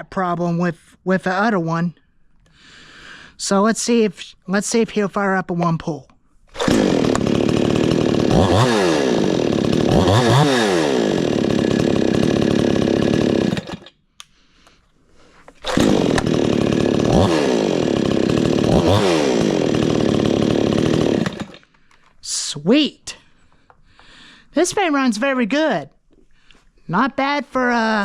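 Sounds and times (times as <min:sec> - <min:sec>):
chainsaw starting and revving: 0:06.5 - 0:14.0, 0:15.3 - 0:21.9.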